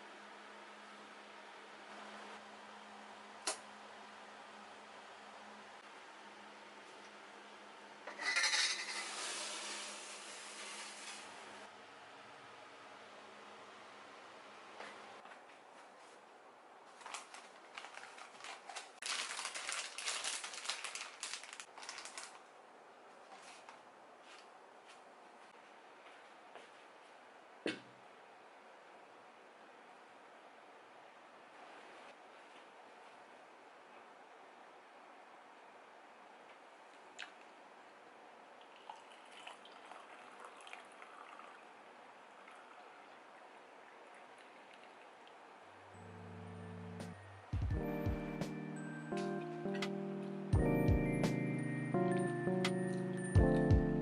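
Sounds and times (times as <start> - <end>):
clicks and rustles of objects: 16.9 - 22.4.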